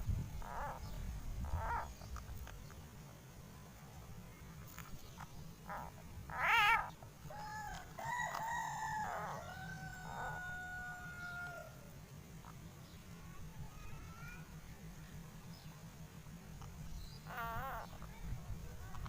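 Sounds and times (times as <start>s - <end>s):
rooster crowing: 7.3s - 11.9s.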